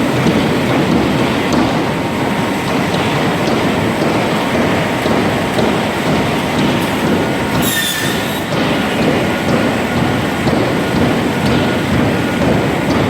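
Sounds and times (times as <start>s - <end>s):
sawmill machinery running: 0.0s - 13.0s
high squeal: 7.6s - 8.4s.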